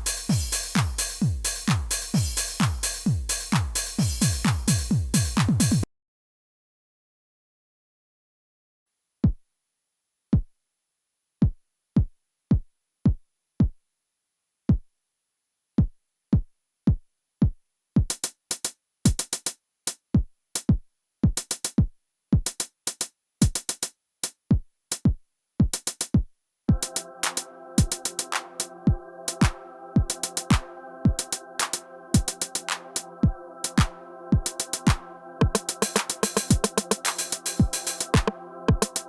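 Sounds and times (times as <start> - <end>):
drum machine bass kicks: 0.0 - 5.8, 23.4 - 23.6, 24.5 - 26.9, 28.9 - 31.2, 33.2 - 39.0
drum machine hi-hats: 0.0 - 5.9, 15.8 - 39.0.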